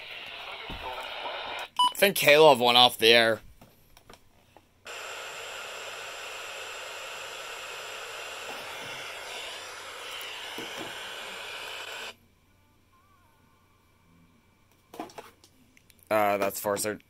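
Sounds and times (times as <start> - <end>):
radio static hiss: 0.0 - 1.7, 4.9 - 12.2.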